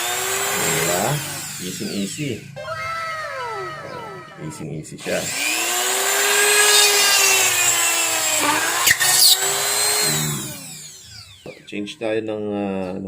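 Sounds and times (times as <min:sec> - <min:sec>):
drill bit cutting wood: 0:00.0 - 0:02.4, 0:05.0 - 0:11.7
rotary tool whining: 0:00.0 - 0:11.7.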